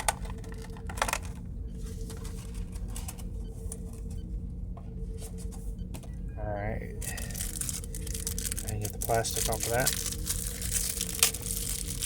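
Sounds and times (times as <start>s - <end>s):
packaging clicks and crinkles: 0.0s - 1.4s, 7.0s - 12.0s
faint steady hum: 0.0s - 12.0s.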